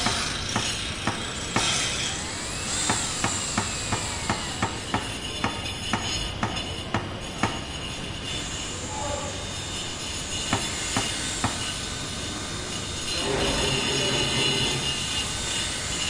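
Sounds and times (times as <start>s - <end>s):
din of machinery: 10.5s - 16.0s
droning tone: 11.7s - 16.0s.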